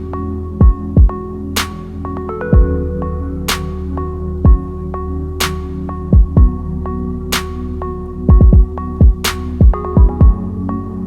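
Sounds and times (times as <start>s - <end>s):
synth chords: 0.0s - 11.0s
deep kick drum: 0.6s - 1.2s, 2.5s - 2.8s, 4.4s - 4.7s, 6.1s - 6.6s, 8.3s - 10.5s
sharp snare hit: 1.6s - 1.8s, 9.2s - 9.7s.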